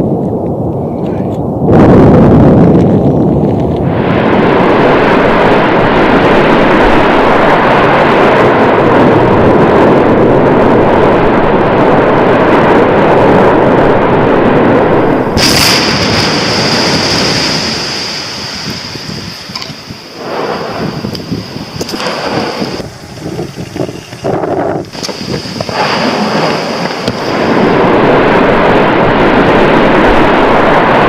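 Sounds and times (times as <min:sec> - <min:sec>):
volcanic eruption rumbling: 0:00.0 - 0:31.0
high steady hiss: 0:15.3 - 0:24.2, 0:24.8 - 0:27.2.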